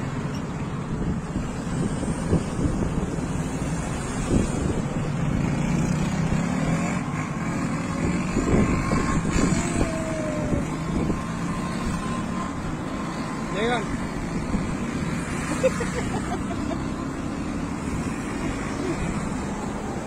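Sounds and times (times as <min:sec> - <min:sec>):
road traffic noise: 0:00.0 - 0:20.0
wind on microphone: 0:00.9 - 0:13.2.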